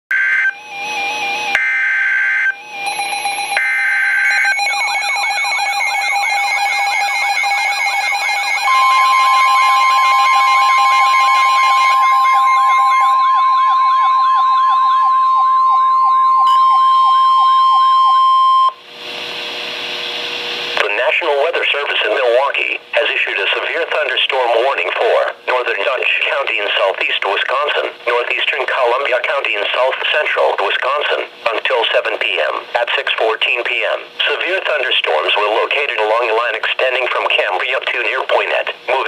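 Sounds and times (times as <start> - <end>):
steady warning alarm tone: 0.1 - 18.8
warbling siren alarm: 0.1 - 18.8.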